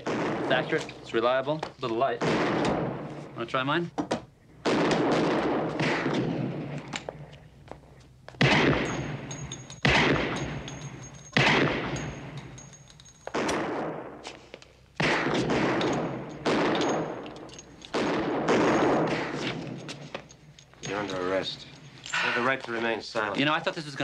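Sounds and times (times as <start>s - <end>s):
handgun shots echoing: 8.4s - 12.6s, 13.3s - 14.2s, 15.0s - 20.3s.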